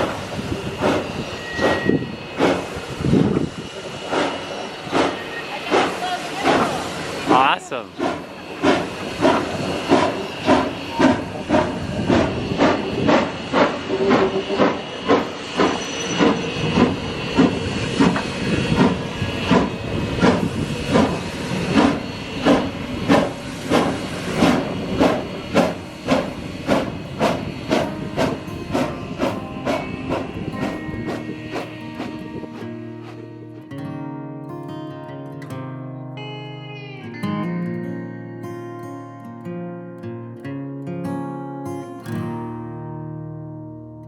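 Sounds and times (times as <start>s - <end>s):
steady hiss of steam: 0.0s - 33.4s
steam locomotive chuffing: 0.0s - 33.7s.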